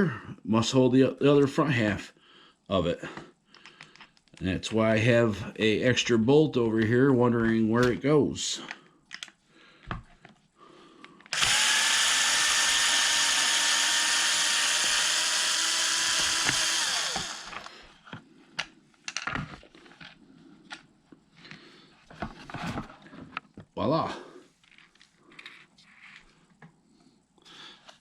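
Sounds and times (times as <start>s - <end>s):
small parts clicking: 11.1s - 17.7s
cordless power driver running: 11.3s - 17.8s.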